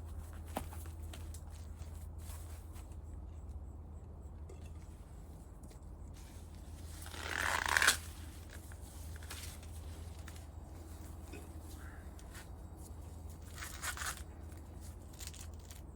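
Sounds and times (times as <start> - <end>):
corn husk rustling and tearing: 6.2 - 11.0, 13.4 - 15.9.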